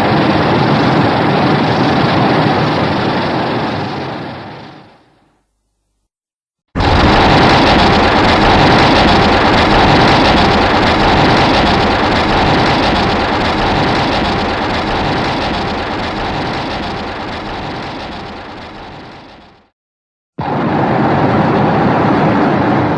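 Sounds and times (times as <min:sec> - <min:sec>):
loud dense noise: 0:06.8 - 0:19.6.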